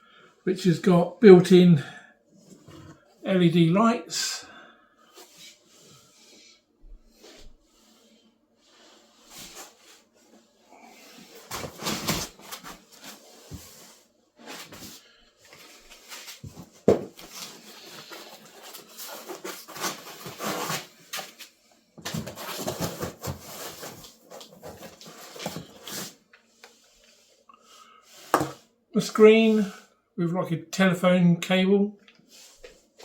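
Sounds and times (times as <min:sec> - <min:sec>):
packing material rustling: 0:11.4 - 0:13.2, 0:14.6 - 0:21.5, 0:22.1 - 0:26.2.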